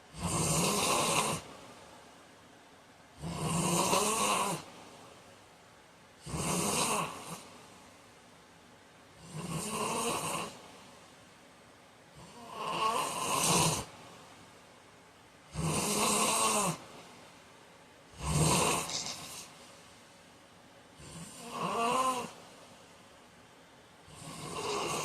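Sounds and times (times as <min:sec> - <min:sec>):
man snoring: 0:00.1 - 0:01.5, 0:03.2 - 0:04.7, 0:06.2 - 0:07.5, 0:09.2 - 0:10.6, 0:12.2 - 0:13.9, 0:15.5 - 0:16.8, 0:18.1 - 0:19.5, 0:21.0 - 0:22.4, 0:24.1 - 0:25.0.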